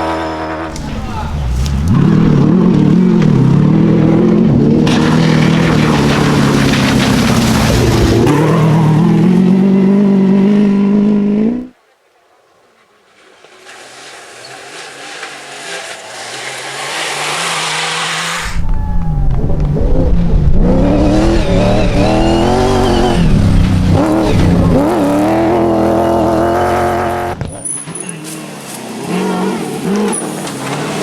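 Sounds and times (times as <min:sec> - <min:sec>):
rally car engine at full throttle: 0:00.0 - 0:11.7, 0:13.4 - 0:31.0
vehicle approaching: 0:00.0 - 0:11.7, 0:13.1 - 0:31.0.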